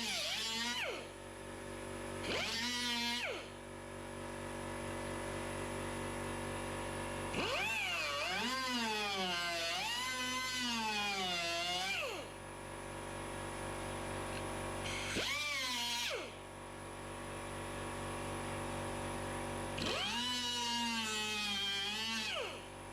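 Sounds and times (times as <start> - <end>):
power tool motor whirring: 0.0 - 1.2, 2.2 - 3.6, 7.3 - 12.4, 14.4 - 16.4, 19.8 - 22.7.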